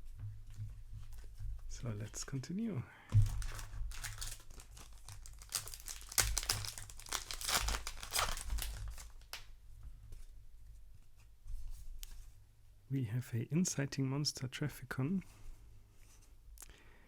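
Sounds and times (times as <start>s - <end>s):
wrapper tearing and crinkling: 3.1s - 9.5s.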